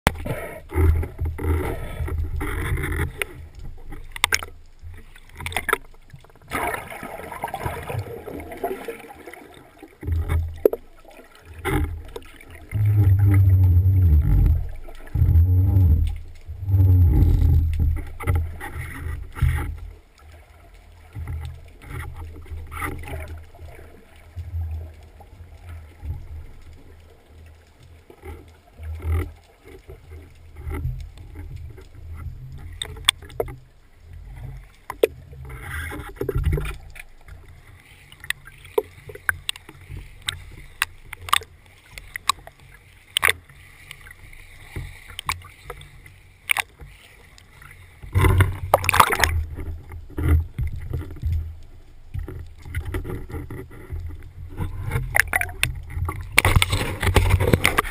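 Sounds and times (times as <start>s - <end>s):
sharp clicks and knocks: 0.0s - 6.6s, 38.1s - 44.1s, 44.8s - 47.0s, 48.0s - 57.9s
water and wind around hull: 0.0s - 57.9s.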